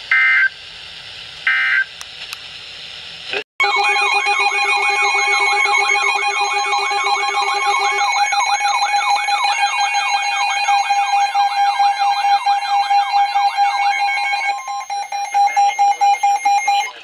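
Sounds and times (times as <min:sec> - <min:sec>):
steady harsh electronic tone: 0:03.3 - 0:17.0
warbling alert tone: 0:03.6 - 0:17.0.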